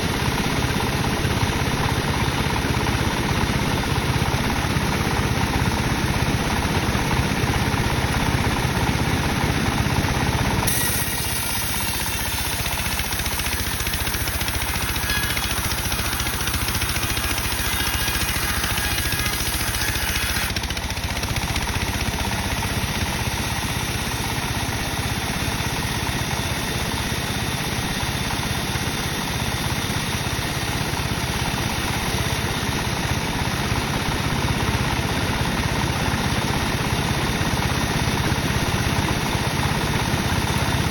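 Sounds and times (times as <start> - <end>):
sawmill engine drone: 0.0 - 40.9
saw cutting wood whine: 0.1 - 33.1.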